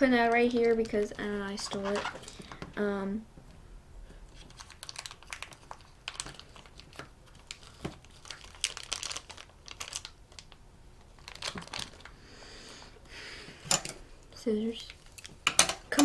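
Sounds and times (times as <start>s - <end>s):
wrapper crinkling: 0.0s - 2.7s, 4.3s - 12.2s, 14.8s - 16.0s.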